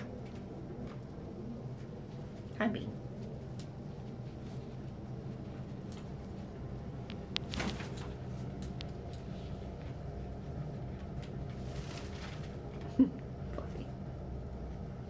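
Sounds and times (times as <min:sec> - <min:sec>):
low hum: 0:00.0 - 0:15.0
light clicks and taps: 0:08.4 - 0:10.0.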